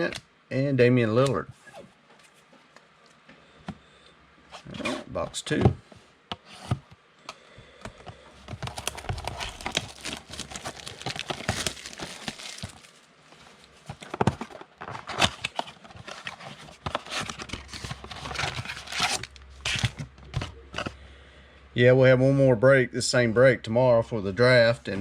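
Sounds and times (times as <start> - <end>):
plastic wrap tearing and crackling: 8.6 - 20.0.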